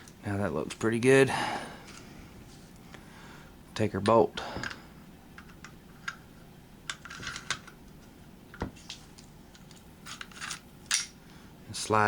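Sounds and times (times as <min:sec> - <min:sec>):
metal parts scraping rattles: 0:06.9 - 0:07.7, 0:09.5 - 0:11.1.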